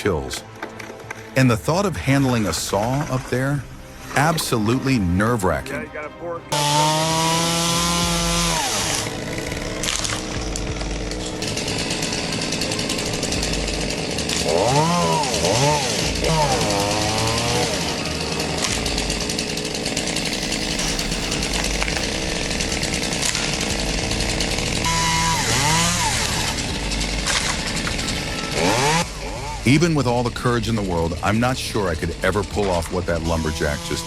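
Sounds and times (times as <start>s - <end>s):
chainsaw revving: 6.5s - 34.0s.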